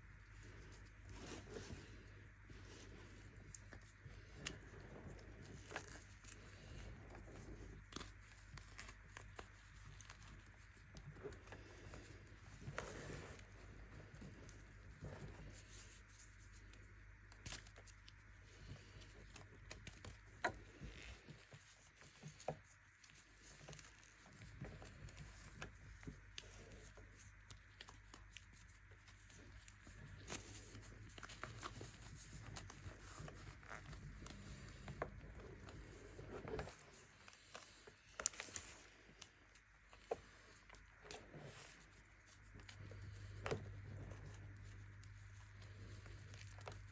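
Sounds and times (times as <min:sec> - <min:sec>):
low steady hum: 0:00.0 - 0:46.9
soft crackles and snaps: 0:00.0 - 0:46.9.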